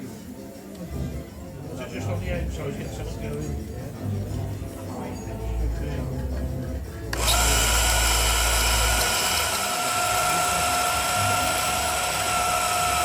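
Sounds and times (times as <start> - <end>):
electric machine whining: 7.1 - 13.0.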